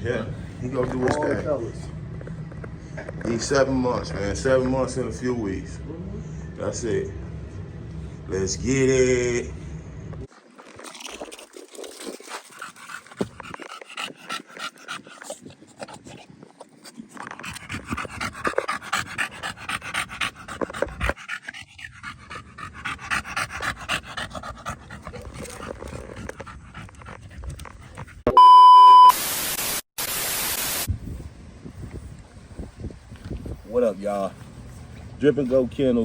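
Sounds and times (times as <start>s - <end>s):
dog panting: 11.9s - 28.3s, 31.1s - 36.0s
loud electronic beep: 28.3s - 29.4s
harsh static hiss: 29.1s - 30.9s.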